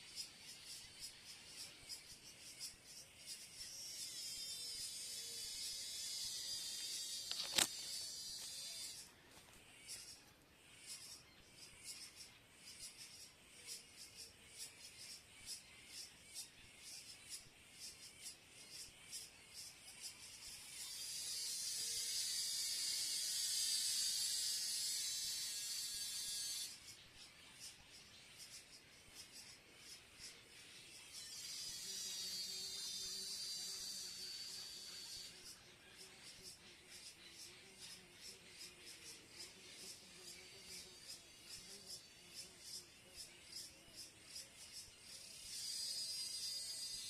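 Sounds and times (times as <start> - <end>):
cicada buzzing: 0.0 - 9.1, 9.7 - 47.0
sharp click: 7.2 - 8.6.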